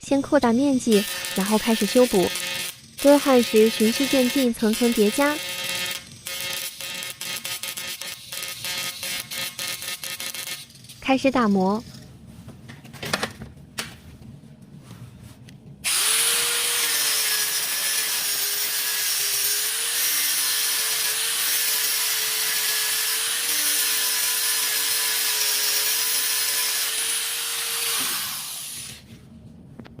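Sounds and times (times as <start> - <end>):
small electric grinder grinding: 0.7 - 11.0, 15.8 - 29.0.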